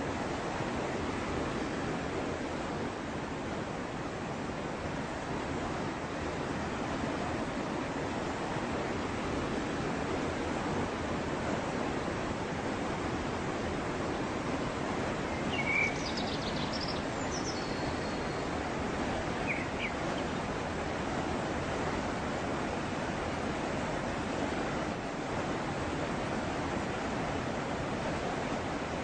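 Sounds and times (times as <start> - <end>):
waterfall rushing: 0.1 - 29.0.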